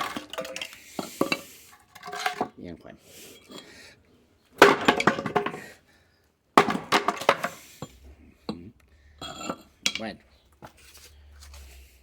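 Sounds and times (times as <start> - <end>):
firewood clattering together: 0.0 - 2.7, 4.5 - 5.8, 6.6 - 8.6, 9.2 - 10.8.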